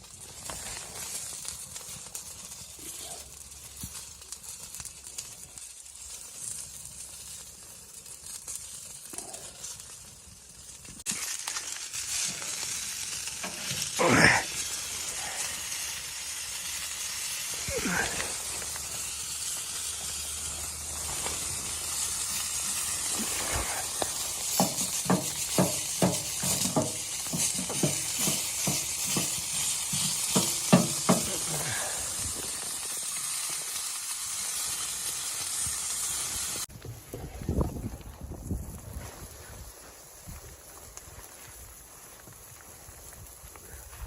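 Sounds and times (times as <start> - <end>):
food sizzling in a pan: 0.0 - 36.7
utensil stirring food: 23.0 - 31.5.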